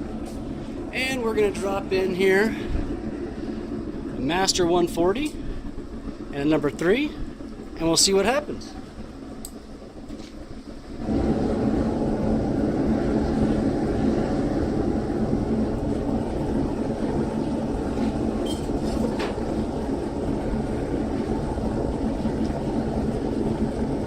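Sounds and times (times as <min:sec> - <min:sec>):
furnace burner roaring: 0:00.0 - 0:24.0.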